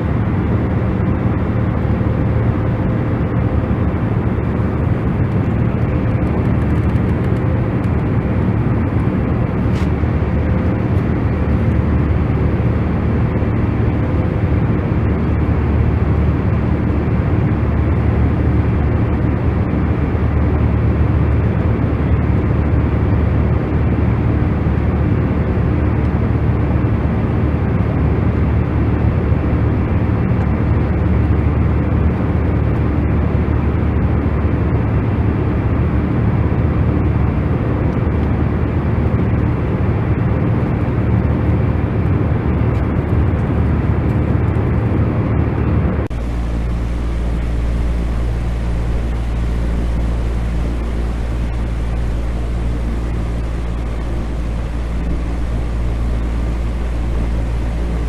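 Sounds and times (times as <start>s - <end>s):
deep steady drone noise: 0.0s - 58.0s
faint steady hum: 9.8s - 58.0s.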